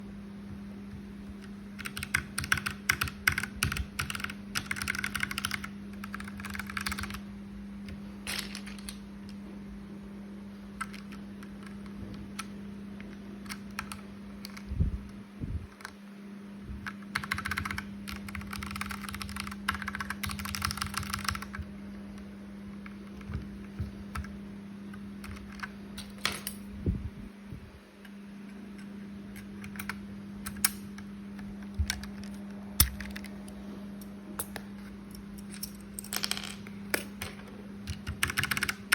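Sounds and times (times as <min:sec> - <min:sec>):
steady low hum: 0:00.0 - 0:38.9
mechanical keyboard keys clicking: 0:01.3 - 0:07.2, 0:10.8 - 0:14.7, 0:16.8 - 0:22.2, 0:25.2 - 0:26.3, 0:29.3 - 0:33.6, 0:37.8 - 0:38.9.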